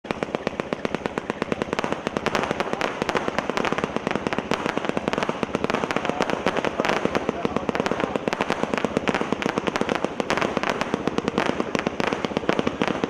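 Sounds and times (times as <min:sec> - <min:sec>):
fireworks popping rapidly: 0:00.0 - 0:13.0.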